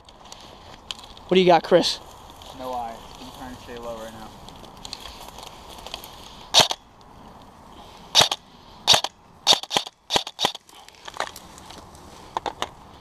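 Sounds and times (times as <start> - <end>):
airsoft gun shots: 6.6 - 6.8, 8.1 - 10.6.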